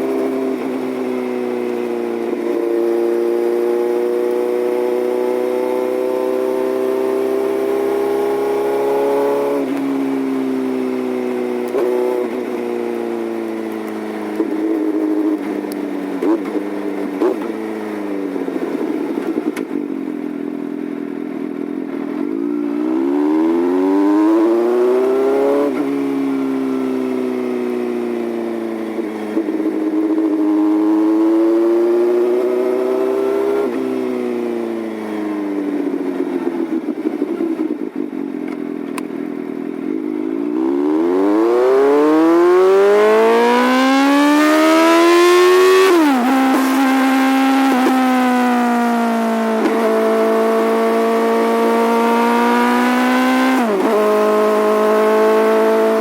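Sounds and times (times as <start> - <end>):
motorcycle exhaust revving: 0.0 - 37.9, 39.6 - 56.0.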